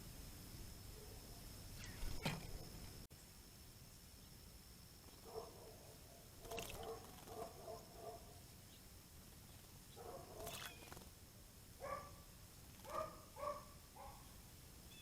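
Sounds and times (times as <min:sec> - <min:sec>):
bird splashing in water: 0:06.4 - 0:07.4.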